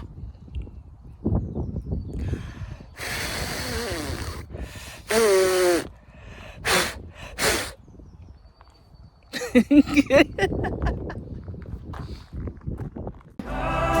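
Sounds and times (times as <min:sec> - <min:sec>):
animal breathy huff: 0:02.3 - 0:07.8
animal breathy snorts: 0:06.6 - 0:07.8.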